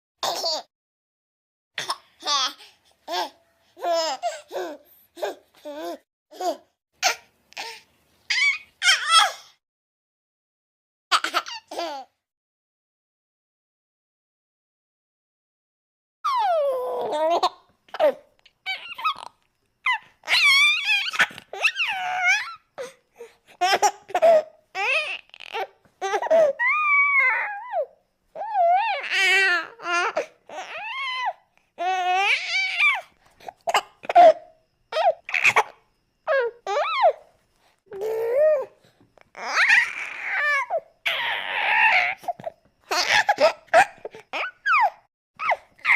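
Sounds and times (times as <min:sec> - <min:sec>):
high-pitched vocal squeals: 0:08.3 - 0:09.4, 0:18.6 - 0:22.7, 0:26.6 - 0:29.4, 0:39.3 - 0:42.3, 0:42.9 - 0:45.9
high-pitched vocal cries and squeals: 0:08.3 - 0:09.5, 0:16.2 - 0:37.3, 0:37.9 - 0:45.9.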